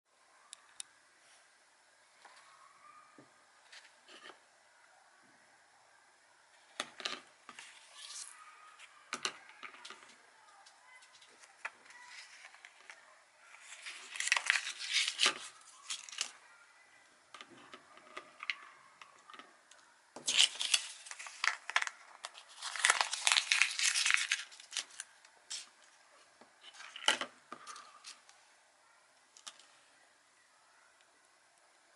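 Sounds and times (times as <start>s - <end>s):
paper crumpling and tearing: 7.6s - 8.4s, 11.1s - 16.4s, 20.2s - 25.7s.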